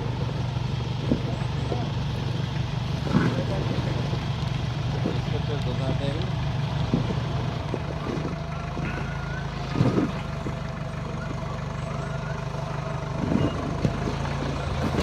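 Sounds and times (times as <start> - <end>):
engine running at low revs: 0.0 - 15.0
vehicle knocks and bumps: 6.8 - 10.9, 13.1 - 15.0.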